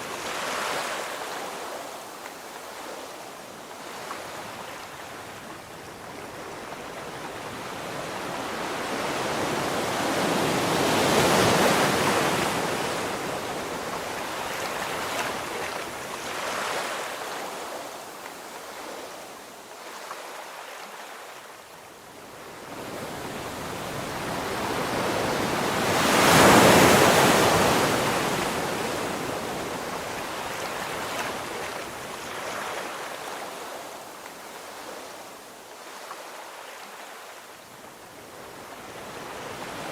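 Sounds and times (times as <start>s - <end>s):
sea waves breaking: 0.0s - 21.5s, 22.4s - 39.9s.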